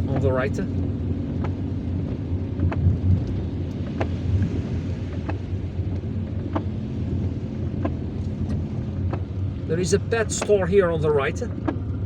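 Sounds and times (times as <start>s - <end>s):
engine and tyres rumbling: 0.0s - 12.0s.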